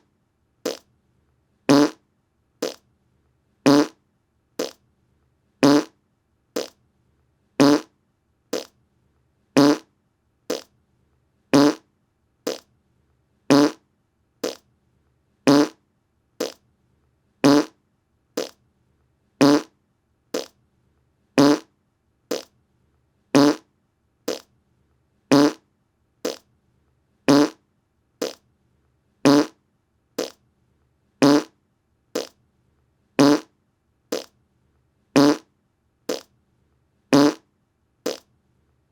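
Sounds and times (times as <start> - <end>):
fart sounds: 0.7 - 0.9, 1.7 - 2.0, 2.6 - 2.8, 3.7 - 4.0, 4.6 - 4.8, 5.6 - 6.0, 6.6 - 6.8, 7.6 - 7.9, 8.5 - 8.7, 9.6 - 9.9, 10.5 - 10.7, 11.6 - 11.8, 12.5 - 12.7, 13.5 - 13.8, 14.4 - 14.6, 15.5 - 15.8, 16.4 - 16.6, 17.4 - 17.8, 18.4 - 18.6, 19.4 - 19.7, 20.4 - 20.6, 21.4 - 21.7, 22.3 - 22.5, 23.4 - 23.7, 24.3 - 24.5, 25.3 - 25.6, 26.2 - 26.4, 27.3 - 27.6, 28.2 - 28.4, 29.3 - 29.6, 30.2 - 30.4, 31.2 - 31.6, 32.2 - 32.4, 33.2 - 33.5, 34.1 - 34.3, 35.2 - 35.5, 36.1 - 36.3, 37.1 - 37.5, 38.1 - 38.3.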